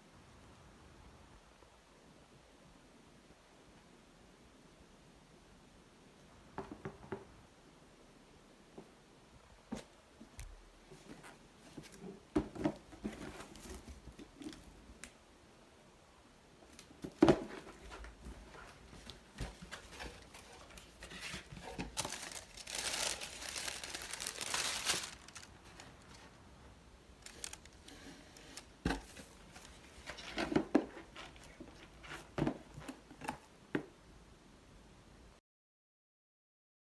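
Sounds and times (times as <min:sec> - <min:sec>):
packaging crinkling: 0:19.1 - 0:26.4, 0:27.2 - 0:30.6.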